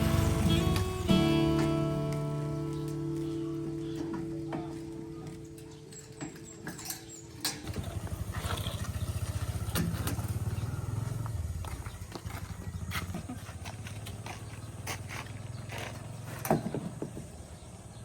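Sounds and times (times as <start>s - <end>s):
small engine running: 0.0s - 2.0s, 7.6s - 16.6s.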